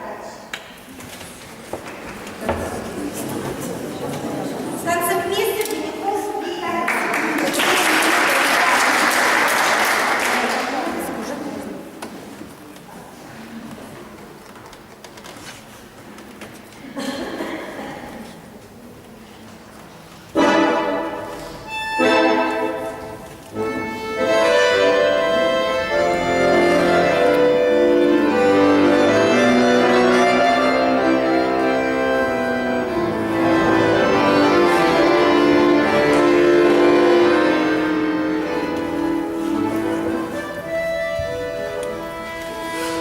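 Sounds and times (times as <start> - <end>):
instrumental dance-class tune: 20.3 - 43.0
piano chords: 20.4 - 43.0.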